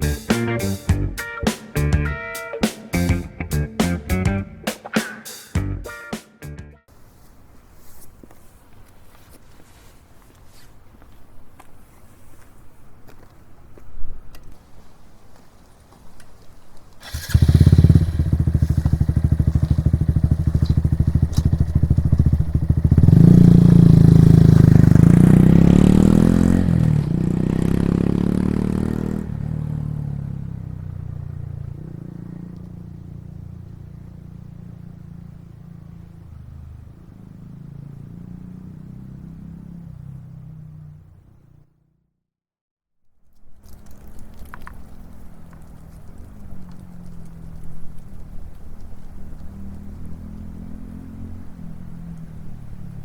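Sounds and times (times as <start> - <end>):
motorcycle engine exhaust revving: 17.0 - 32.5.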